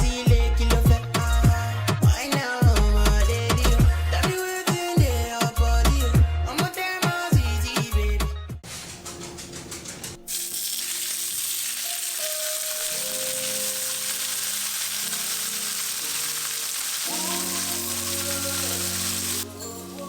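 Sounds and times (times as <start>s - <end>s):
background music: 0.0s - 20.0s
food sizzling in a frying pan: 10.3s - 20.0s.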